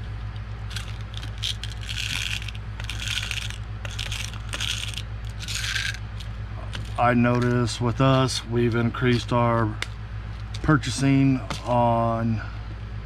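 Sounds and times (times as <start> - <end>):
low electrical hum: 0.0 - 13.0
metal parts rattling and scraping: 0.7 - 7.6.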